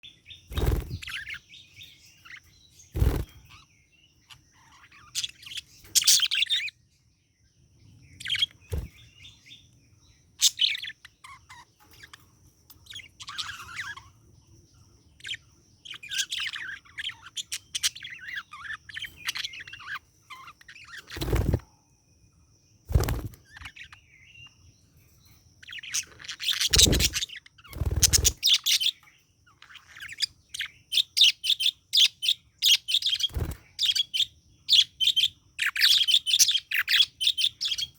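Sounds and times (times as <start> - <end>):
budgerigar chirping: 3.5 - 6.7, 10.4 - 12.2, 12.8 - 14.2, 15.2 - 21.4, 25.6 - 37.9.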